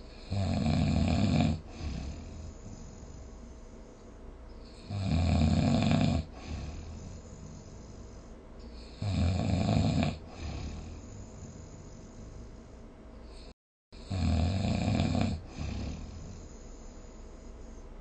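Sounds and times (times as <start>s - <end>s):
quiet breathing: 0.0s - 5.1s, 5.9s - 9.4s, 10.0s - 14.1s, 14.8s - 18.0s
person snoring: 0.2s - 3.4s, 4.6s - 12.5s, 13.3s - 17.1s.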